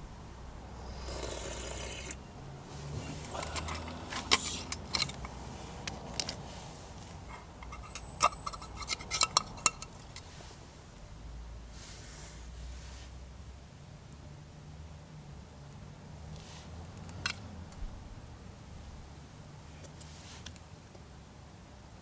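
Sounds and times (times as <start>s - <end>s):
metal cookware clinking: 7.6s - 10.2s.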